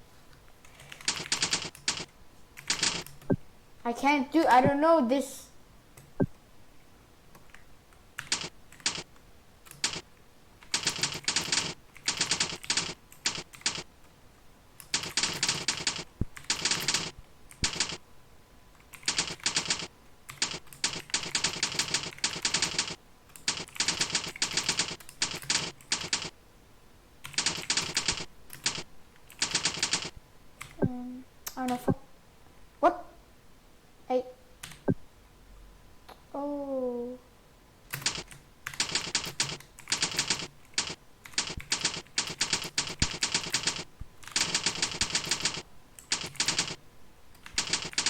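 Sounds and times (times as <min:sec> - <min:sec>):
fast typing on keyboard: 0:00.6 - 0:03.3, 0:08.2 - 0:13.9, 0:14.8 - 0:18.0, 0:18.8 - 0:26.3, 0:27.2 - 0:30.8, 0:37.9 - 0:48.0.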